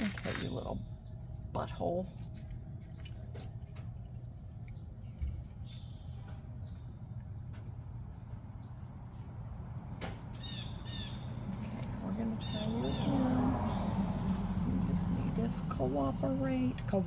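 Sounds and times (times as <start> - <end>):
birds chirping: 4.2 - 7.8, 10.1 - 17.0.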